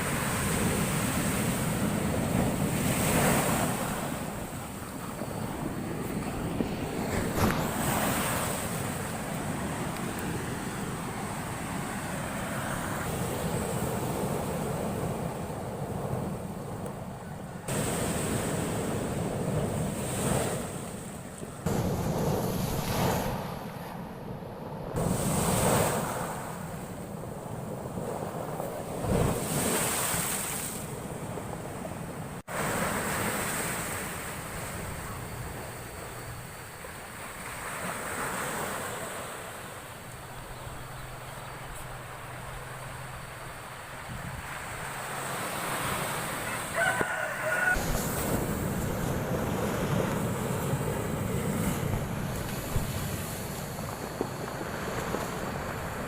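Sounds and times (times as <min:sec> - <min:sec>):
wind buffeting microphone: 0:00.0 - 0:32.5, 0:46.8 - 0:56.0
ocean surf crashing: 0:00.0 - 0:56.0
waves breaking on shore: 0:00.0 - 0:56.0
rooster crowing: 0:46.3 - 0:48.2.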